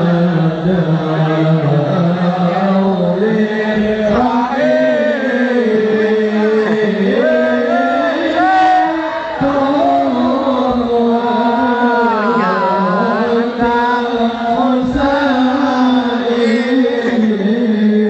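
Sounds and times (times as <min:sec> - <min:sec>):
chanted singing: 0:00.0 - 0:18.0.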